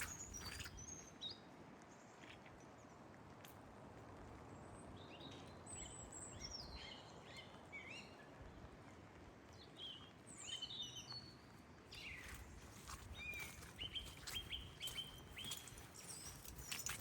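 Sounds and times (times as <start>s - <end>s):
small birds chirping: 0.0s - 1.4s, 9.8s - 17.0s.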